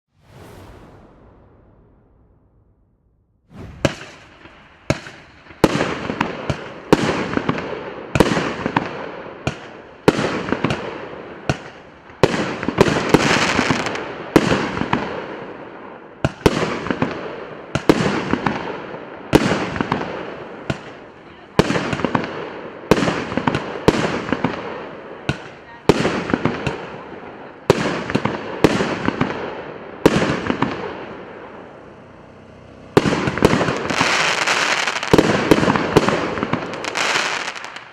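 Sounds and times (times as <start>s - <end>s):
firework crackle and hiss: 3.5s - 7.6s, 11.5s - 15.6s, 32.9s - 37.9s
fireworks cake firing bangs: 32.9s - 37.9s.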